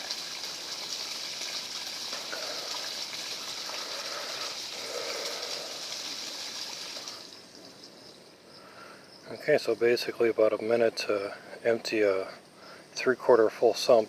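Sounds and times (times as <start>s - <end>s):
water gushing from pipe: 0.0s - 7.5s.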